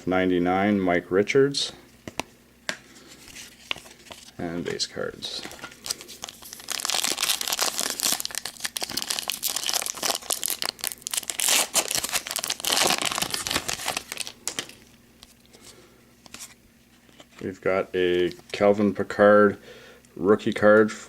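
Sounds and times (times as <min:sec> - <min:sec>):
card pack wrapper crinkling: 0:03.2 - 0:15.4.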